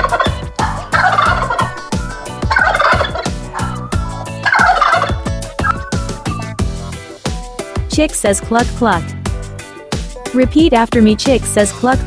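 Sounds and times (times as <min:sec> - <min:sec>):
turkey gobbling: 0:00.0 - 0:06.9
music with steady beat: 0:00.0 - 0:12.0.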